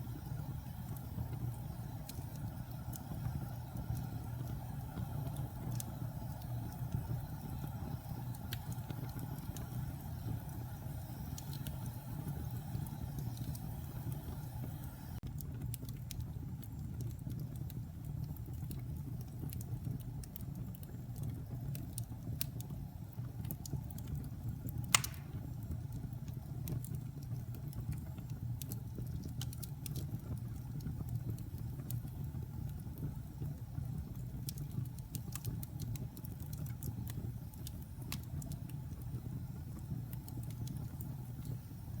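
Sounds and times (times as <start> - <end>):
fire crackling: 0.0 - 42.0
low rumble of flames: 0.0 - 42.0
loud fire pop: 24.9 - 25.5.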